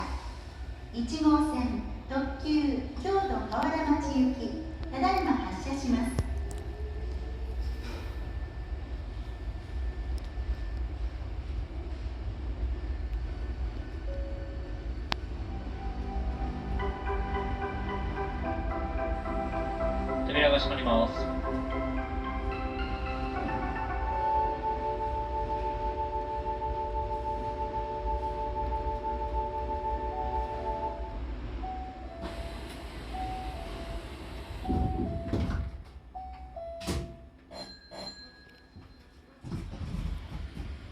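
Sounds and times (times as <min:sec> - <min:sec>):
electric train rumbling: 0:00.0 - 0:38.3, 0:39.5 - 0:40.9
station noise: 0:00.1 - 0:37.1
sliding doors shutting: 0:32.1 - 0:36.0.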